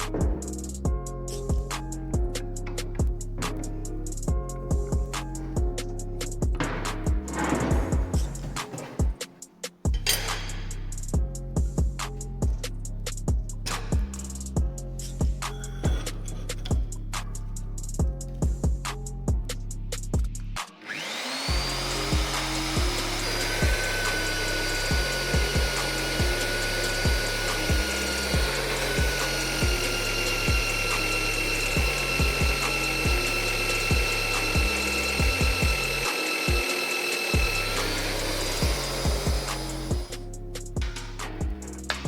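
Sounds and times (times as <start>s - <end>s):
background music beat: 0.0s - 42.0s
electric power tool whining: 20.7s - 42.0s.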